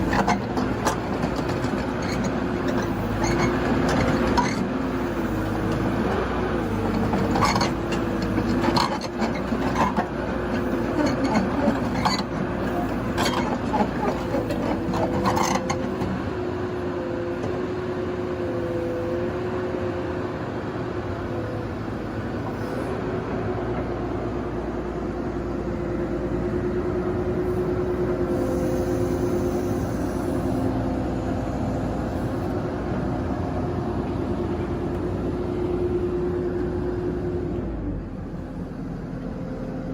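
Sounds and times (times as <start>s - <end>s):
excavator engine humming: 0.0s - 39.9s.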